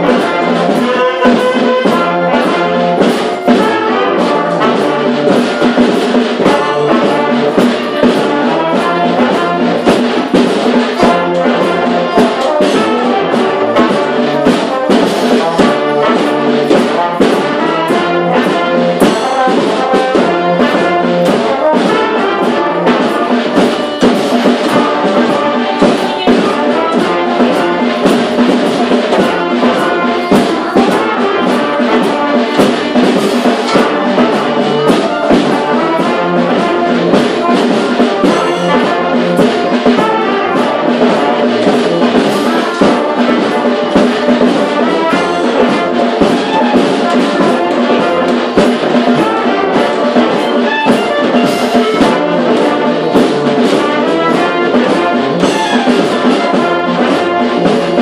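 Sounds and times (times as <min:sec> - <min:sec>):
brass band horns: 0:00.0 - 0:58.0
steady drum beat: 0:00.0 - 0:58.0.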